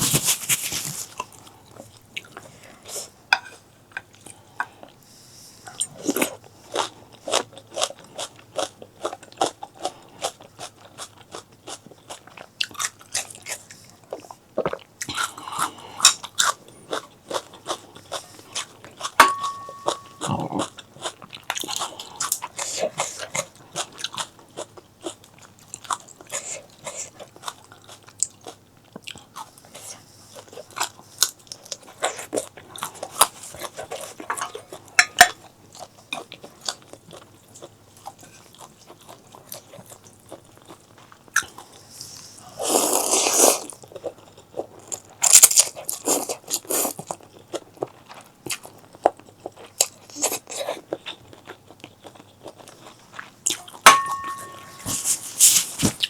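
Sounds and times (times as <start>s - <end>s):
person chewing food: 5.6s - 56.0s.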